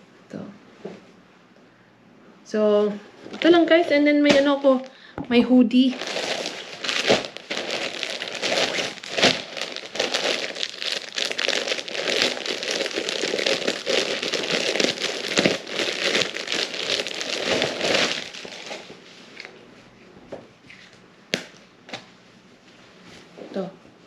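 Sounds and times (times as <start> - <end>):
packaging crinkling: 5.8 - 19.5.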